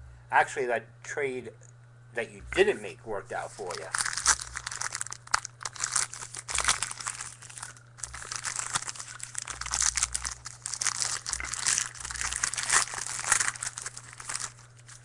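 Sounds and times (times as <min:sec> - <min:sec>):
foil wrapper crinkling and tearing: 0:03.4 - 0:15.0.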